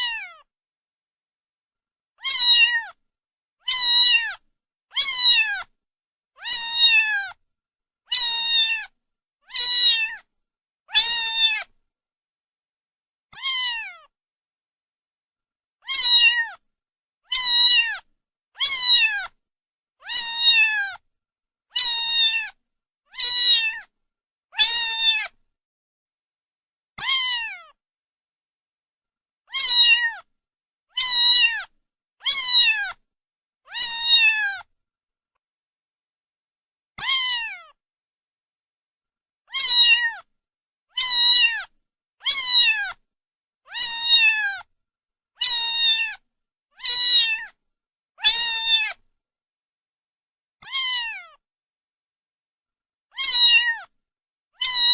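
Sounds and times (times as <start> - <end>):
cat meowing: 0.0 - 0.5, 2.2 - 3.0, 3.7 - 5.7, 6.4 - 7.4, 8.1 - 8.9, 9.5 - 10.3, 10.9 - 11.7, 13.3 - 14.1, 15.8 - 16.6, 17.3 - 19.4, 20.0 - 21.0, 21.7 - 23.9, 24.5 - 25.4, 27.0 - 27.8, 29.5 - 30.3, 30.9 - 33.0, 33.7 - 34.7, 37.0 - 37.8, 39.5 - 40.3, 41.0 - 43.0, 43.7 - 44.7, 45.4 - 46.2, 46.8 - 47.6, 48.2 - 49.0, 50.6 - 51.4, 53.1 - 53.9, 54.6 - 54.9.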